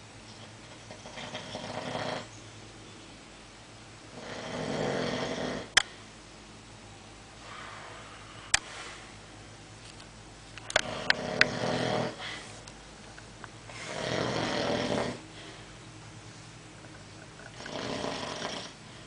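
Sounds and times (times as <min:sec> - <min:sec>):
person snoring: 0:04.1 - 0:05.8, 0:10.8 - 0:12.5, 0:13.7 - 0:15.2, 0:17.5 - 0:18.8
faint breath: 0:07.4 - 0:09.3, 0:12.2 - 0:12.7, 0:15.2 - 0:15.8.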